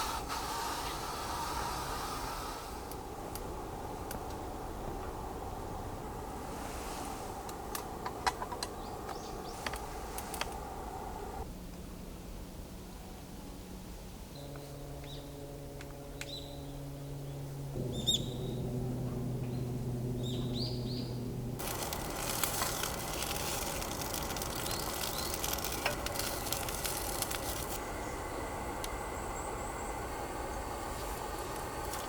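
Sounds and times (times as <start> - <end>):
dense steady hiss: 0.0 - 15.5, 21.4 - 32.0
low steady hum: 0.0 - 32.0
birds chirping: 8.6 - 11.4, 16.2 - 18.6, 19.4 - 32.0.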